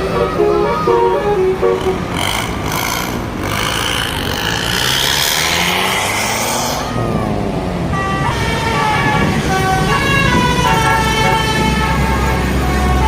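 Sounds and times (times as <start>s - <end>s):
bus musical horn: 0.0s - 3.6s, 7.8s - 13.0s
bus passing at speed: 0.0s - 13.0s.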